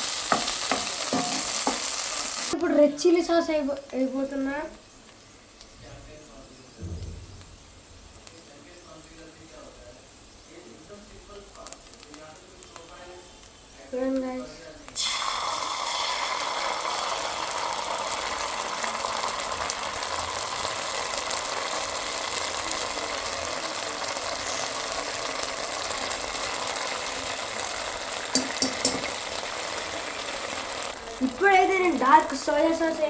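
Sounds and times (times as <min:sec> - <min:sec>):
food sizzling in a hot pan: 0:00.0 - 0:33.0
spatula clicking against pan: 0:28.3 - 0:29.1.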